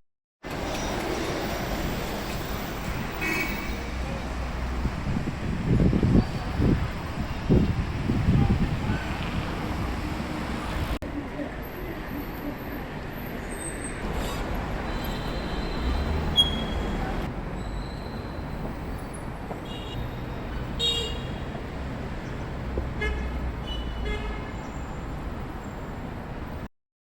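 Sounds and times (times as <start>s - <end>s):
city traffic rumbling: 0.4s - 26.7s
vehicle horn toots: 3.2s - 3.7s.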